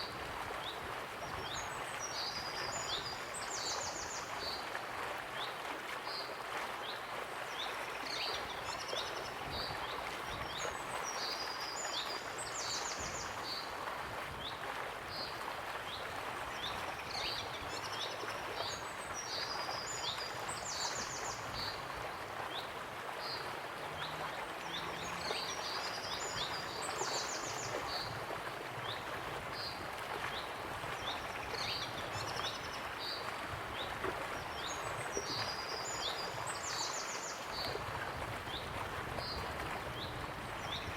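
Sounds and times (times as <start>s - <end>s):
waterfall rushing: 22.8s - 28.9s.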